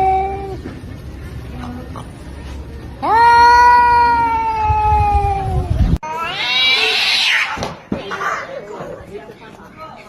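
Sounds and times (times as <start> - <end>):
cat yowling: 3.0 - 7.6.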